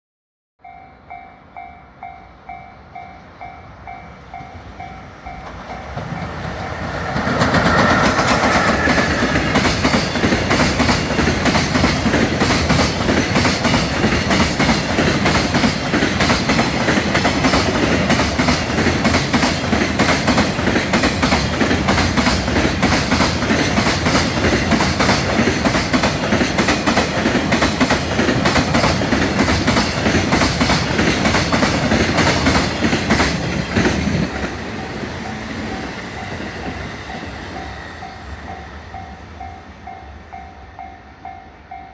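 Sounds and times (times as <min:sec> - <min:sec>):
freight train passing: 0:00.6 - 0:41.9
wheels clacking over rail joints: 0:05.2 - 0:34.6.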